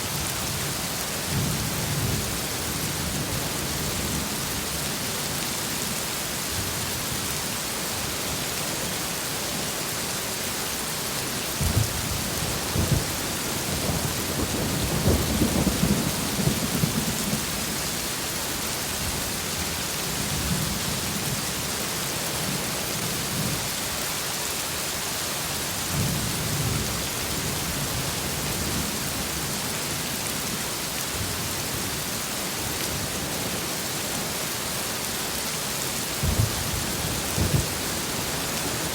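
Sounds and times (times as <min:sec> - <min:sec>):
heavy rain: 0:00.0 - 0:38.9
thunder rumbling: 0:36.2 - 0:38.0.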